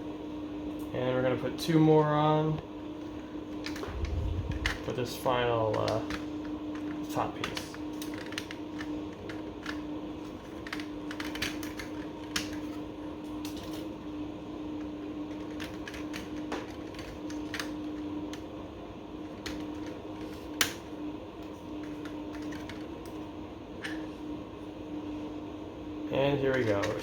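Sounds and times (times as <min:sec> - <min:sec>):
steady low hum: 0:00.0 - 0:27.0
plastic pieces clicking together: 0:10.4 - 0:12.8.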